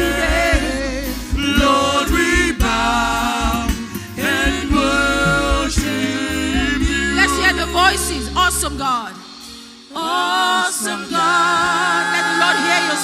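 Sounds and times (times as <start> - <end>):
band playing gospel music: 0.0 - 13.0
person singing: 1.8 - 8.9.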